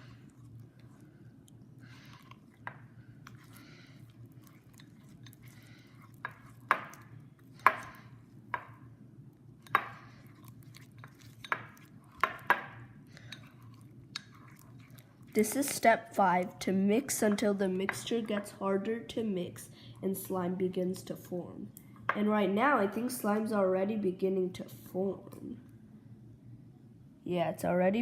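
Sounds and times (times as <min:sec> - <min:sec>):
slime squishing: 0:00.0 - 0:08.7, 0:09.6 - 0:18.5.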